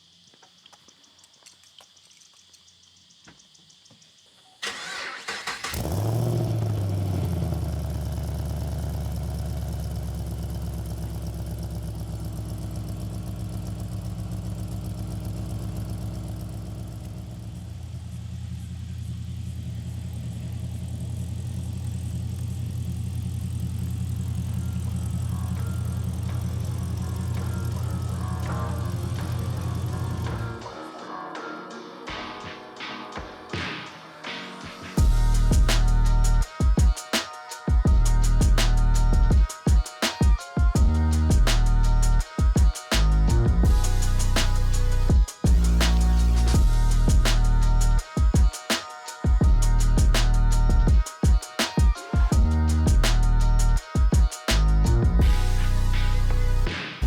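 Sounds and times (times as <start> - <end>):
insect chirring: 0.0 - 17.2
engine cranking and idling: 4.6 - 30.6.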